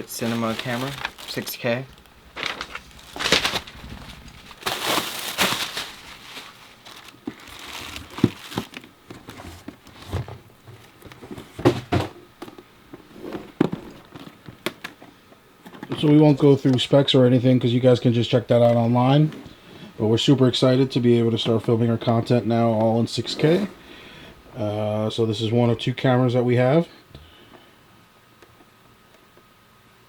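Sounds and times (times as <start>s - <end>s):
rustling and crinkling: 0.0s - 16.9s, 20.7s - 24.6s.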